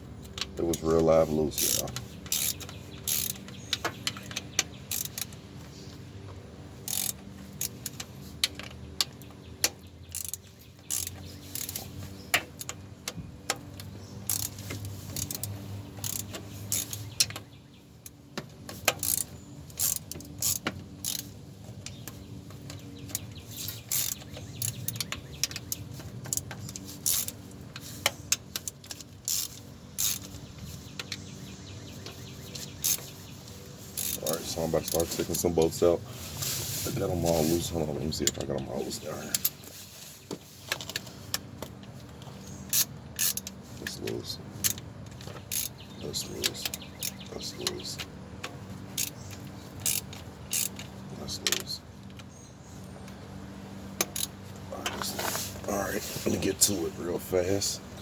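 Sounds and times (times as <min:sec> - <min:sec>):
socket ratchet clicking: 0:01.6 - 0:05.4, 0:06.8 - 0:17.5, 0:18.1 - 0:30.4, 0:32.6 - 0:33.1, 0:34.0 - 0:35.1, 0:42.7 - 0:44.0, 0:44.6 - 0:48.1, 0:48.9 - 0:52.2, 0:54.0 - 0:54.4.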